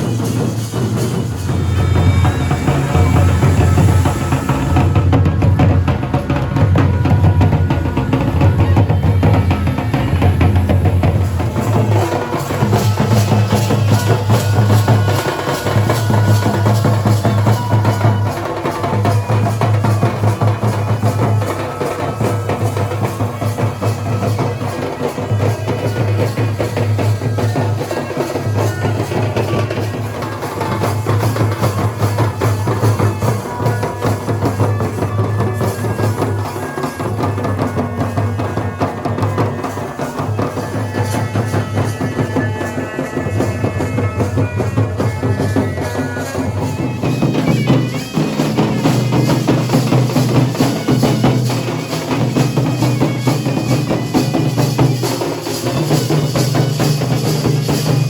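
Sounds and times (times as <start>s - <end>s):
deep booming drum: 0.0s - 15.2s
rapid drumming: 0.0s - 58.0s
sustained pitched notes: 0.4s - 11.9s.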